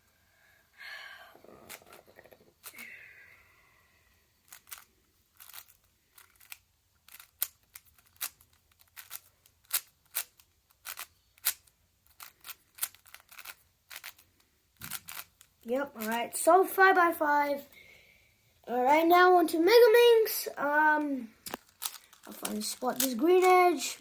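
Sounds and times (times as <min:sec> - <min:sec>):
puzzle cube clicking: 0:04.5 - 0:16.1, 0:21.0 - 0:24.0.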